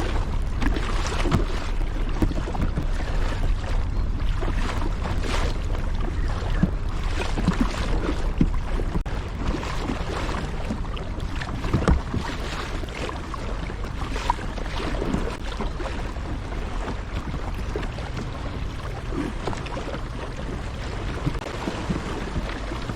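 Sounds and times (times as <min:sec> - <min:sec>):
paddle splashing in water: 0:00.0 - 0:22.9
wind rumble on microphone: 0:00.0 - 0:22.9.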